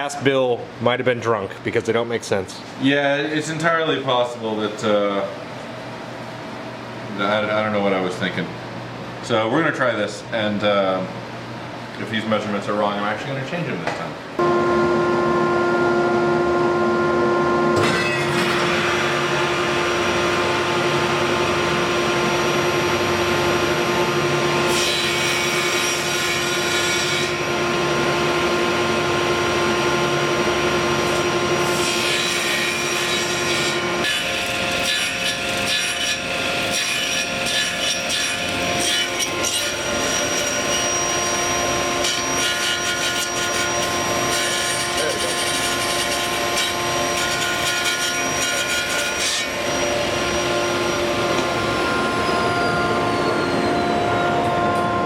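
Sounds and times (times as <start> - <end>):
table saw cutting wood: 14.4 - 55.0.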